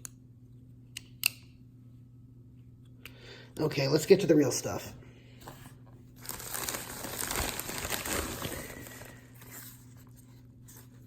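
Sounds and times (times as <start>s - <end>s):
packaging crinkling and rustling: 6.1s - 11.0s.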